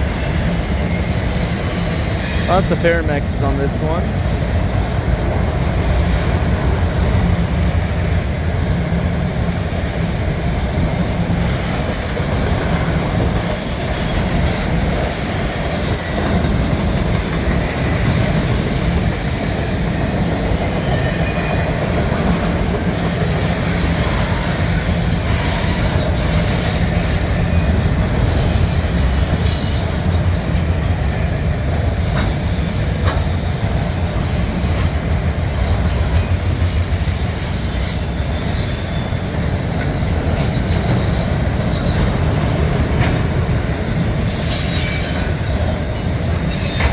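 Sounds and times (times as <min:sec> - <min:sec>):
steel wheels rumbling on rail: 0:00.0 - 0:46.9
high wheel squeals: 0:00.1 - 0:03.6, 0:11.1 - 0:19.1, 0:25.3 - 0:30.7, 0:37.0 - 0:46.9.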